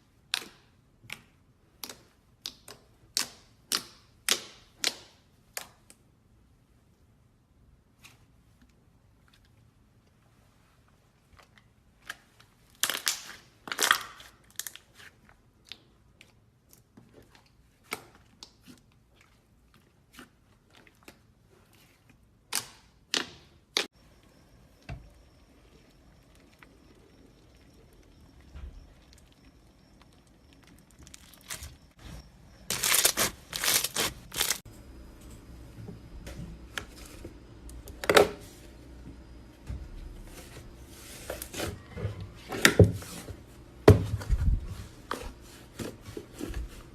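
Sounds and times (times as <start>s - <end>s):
faint steady hum: 23.8s - 46.9s
slime crinkling and crackling: 30.0s - 32.0s, 32.7s - 34.6s.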